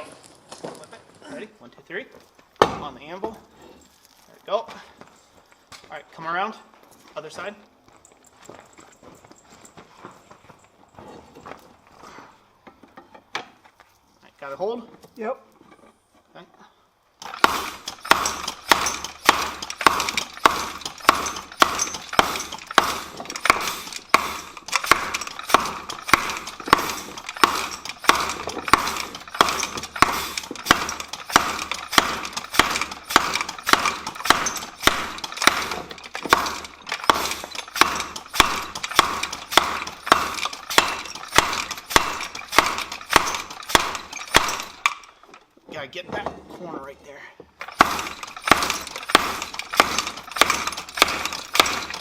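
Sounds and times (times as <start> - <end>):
hammer striking hot steel: 17.2 - 44.9, 47.7 - 52.0.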